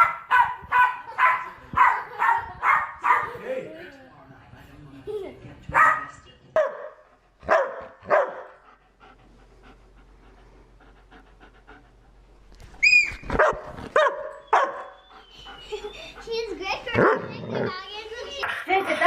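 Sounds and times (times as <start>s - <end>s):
dog barking: 0.0s - 3.4s, 5.7s - 8.5s, 13.4s - 15.0s, 17.0s - 17.4s
dog high-pitched cry: 12.8s - 13.5s.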